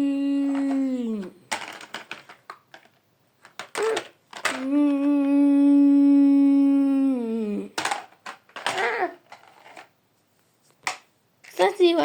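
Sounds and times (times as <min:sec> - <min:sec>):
person humming a long note: 0:00.0 - 0:01.4, 0:04.6 - 0:07.7
short vocal sound: 0:00.0 - 0:01.4, 0:03.8 - 0:07.8.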